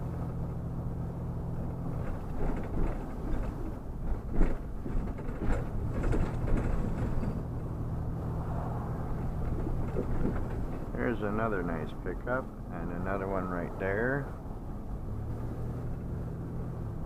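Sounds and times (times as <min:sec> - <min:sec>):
vehicle engine and road noise: 0:00.0 - 0:17.0
rattles and knocks in cab: 0:01.6 - 0:07.7, 0:09.2 - 0:11.4.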